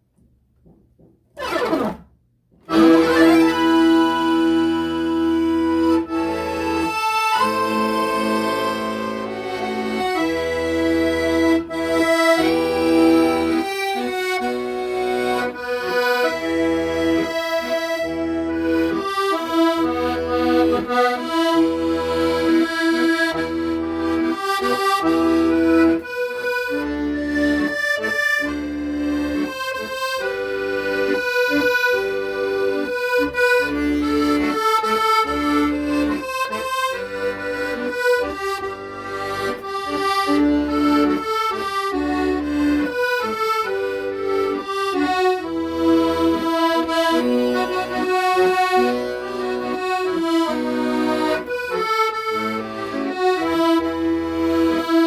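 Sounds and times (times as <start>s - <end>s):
accordion bass notes: 0.0s - 55.0s
accordion melody: 1.3s - 55.0s.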